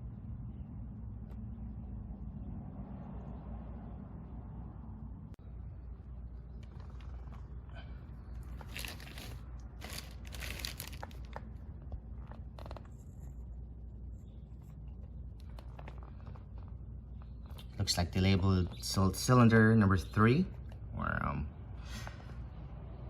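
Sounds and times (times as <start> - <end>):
steady low hum: 0.0 - 23.0
packaging crinkling and rustling: 8.4 - 13.0.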